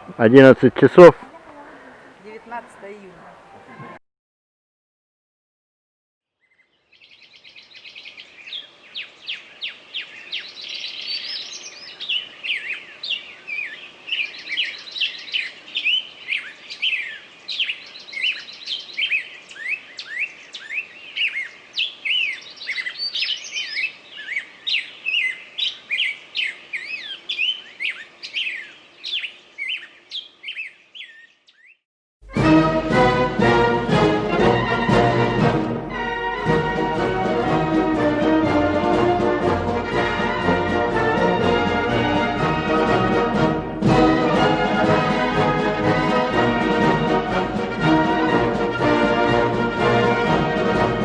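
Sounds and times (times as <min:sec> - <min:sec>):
songbirds chirping and whistling: 0:06.4 - 0:31.8.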